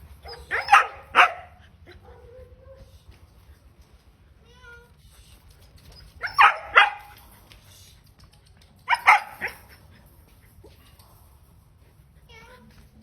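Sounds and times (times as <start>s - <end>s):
puppy barking: 0.2s - 2.8s, 6.2s - 7.2s, 8.9s - 9.8s.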